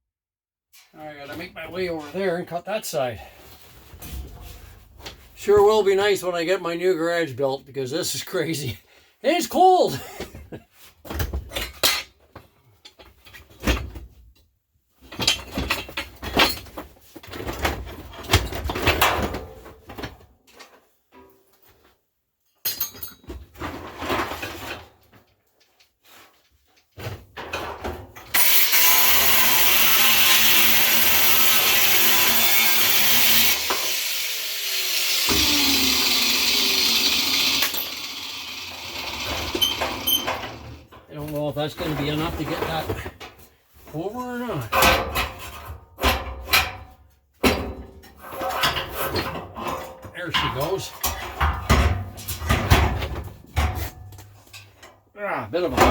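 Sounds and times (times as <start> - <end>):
metal tools knocking and clanking: 22.6 - 23.5
power tool cutting steel: 28.3 - 40.8.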